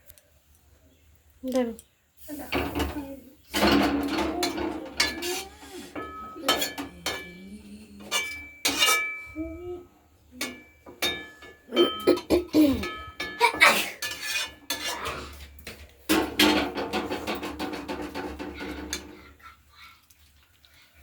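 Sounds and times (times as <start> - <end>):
metal utensils striking cooking pot: 2.5 - 9.4, 10.4 - 19.2.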